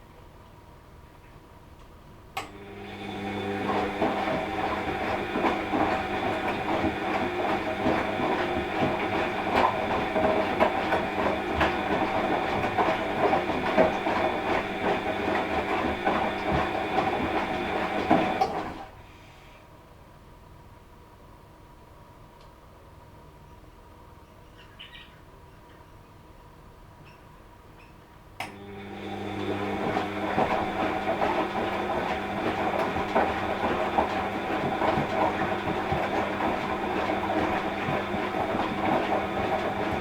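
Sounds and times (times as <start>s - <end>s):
washing machine motor whine: 2.4s - 19.2s, 28.4s - 40.0s.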